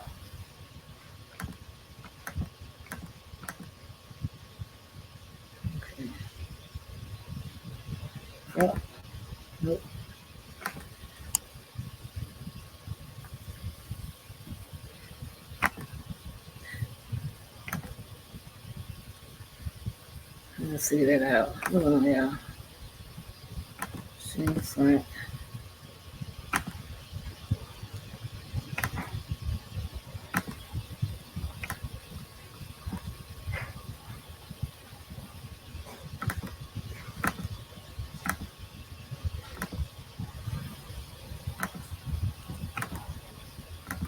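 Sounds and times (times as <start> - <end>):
computer mouse clicks: 1.4 - 3.7, 17.7 - 17.9, 26.5 - 26.8, 28.7 - 29.2, 30.3 - 30.8, 31.6 - 31.9, 35.9 - 38.5, 41.5 - 42.0, 42.6 - 43.1.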